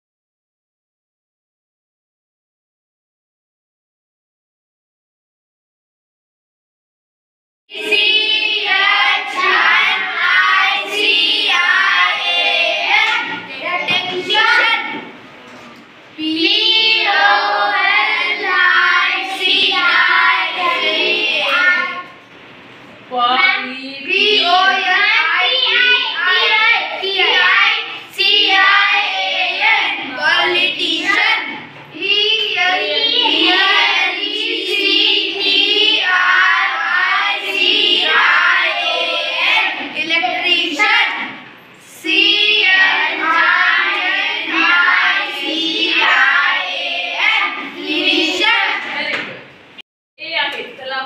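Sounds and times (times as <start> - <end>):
children chanting in unison: 7.7 - 15.2, 16.2 - 22.1, 24.1 - 49.4.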